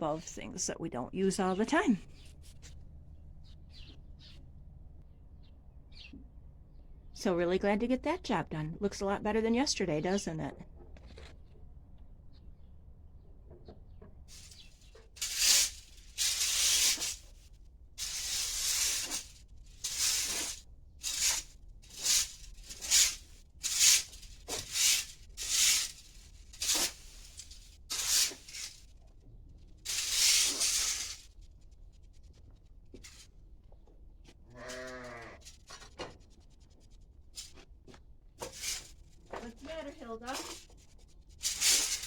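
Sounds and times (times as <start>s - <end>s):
rough scraping strokes: 14.3s - 17.4s, 18.0s - 28.9s, 29.8s - 31.3s, 38.4s - 42.0s.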